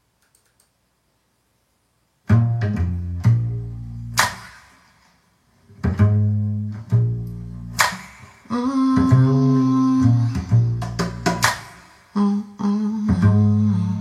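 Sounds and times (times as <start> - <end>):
plucked bass notes: 2.3 - 4.4, 5.7 - 8.0, 8.6 - 11.6, 13.0 - 14.0
sharp percussive hit: 4.2 - 5.1, 7.8 - 8.5, 11.0 - 12.1.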